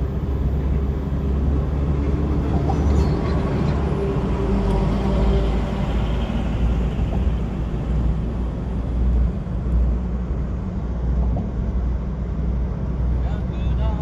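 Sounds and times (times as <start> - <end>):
road and wind noise: 0.0 - 14.0
vehicle rumble: 0.0 - 14.0.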